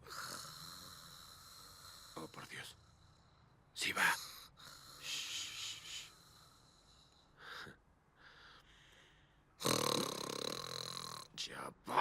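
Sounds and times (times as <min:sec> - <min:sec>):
woman snoring: 0:00.0 - 0:02.3, 0:09.6 - 0:11.3.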